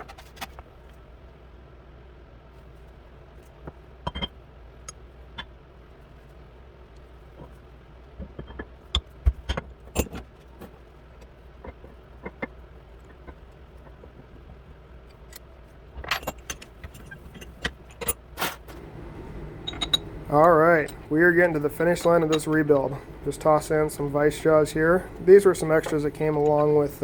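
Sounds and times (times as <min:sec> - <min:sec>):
low steady hum: 0:00.0 - 0:27.0
metal tools clinking: 0:19.6 - 0:27.0.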